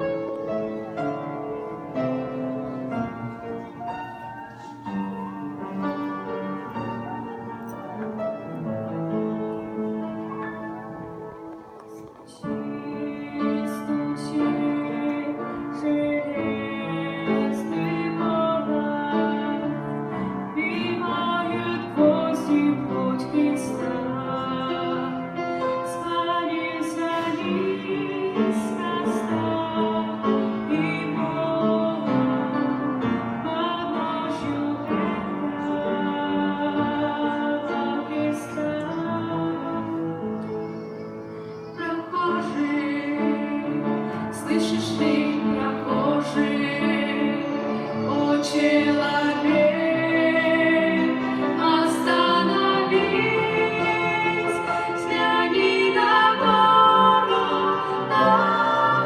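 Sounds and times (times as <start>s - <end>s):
piano accompaniment: 0.0s - 59.0s
women singing a slow song: 12.2s - 40.4s, 41.8s - 59.0s.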